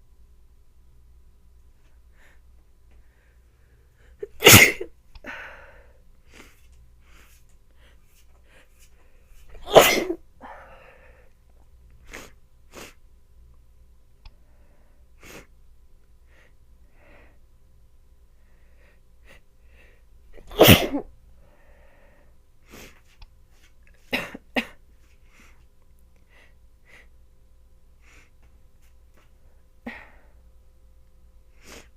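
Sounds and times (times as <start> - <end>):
woman sneezing: 4.2 - 4.9, 9.6 - 10.2, 20.4 - 21.1
woman sniffling: 29.8 - 30.4, 31.6 - 31.9.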